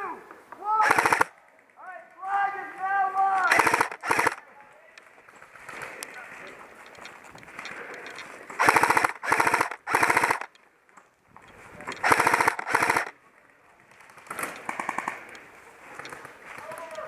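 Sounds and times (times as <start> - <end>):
airsoft rifle firing bursts: 0.8 - 1.4, 3.4 - 4.4, 8.6 - 10.5, 12.0 - 13.2, 14.2 - 15.3.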